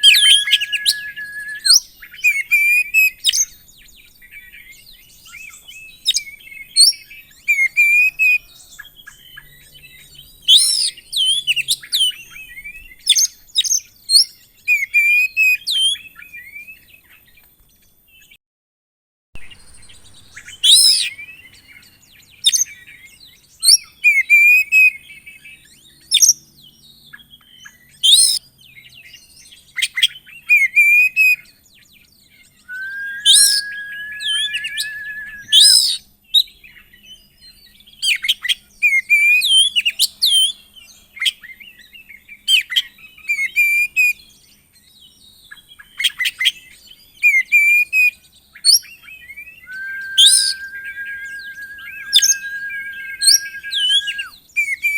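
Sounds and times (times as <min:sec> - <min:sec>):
bird singing sharp calls: 0:00.0 - 0:02.7, 0:32.7 - 0:36.0, 0:49.6 - 0:54.3
bird buzzy trill: 0:32.7 - 0:35.9, 0:49.7 - 0:54.2.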